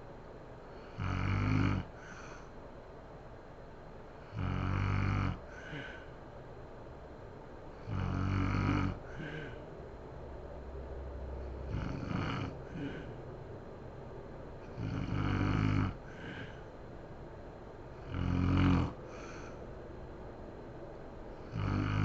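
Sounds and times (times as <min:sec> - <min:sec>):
woman snoring loudly: 0:00.9 - 0:01.9, 0:04.3 - 0:06.0, 0:07.8 - 0:09.6, 0:11.7 - 0:13.1, 0:14.8 - 0:16.5, 0:18.0 - 0:19.5, 0:21.5 - 0:22.0
soft breath: 0:01.9 - 0:02.7, 0:05.4 - 0:06.4, 0:08.9 - 0:09.8, 0:11.3 - 0:13.5, 0:15.4 - 0:16.9, 0:18.9 - 0:19.9.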